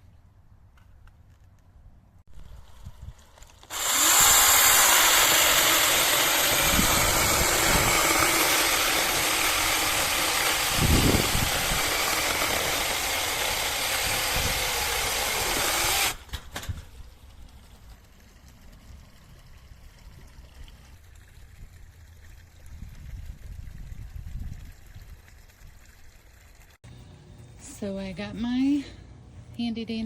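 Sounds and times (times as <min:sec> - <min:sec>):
mini chainsaw whining: 0:03.6 - 0:16.2.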